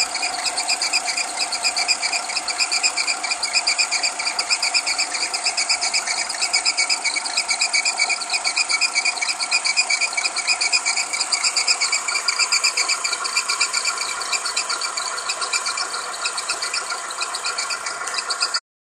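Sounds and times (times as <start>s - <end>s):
high-pitched pulsing engine whistle: 0.0s - 18.6s.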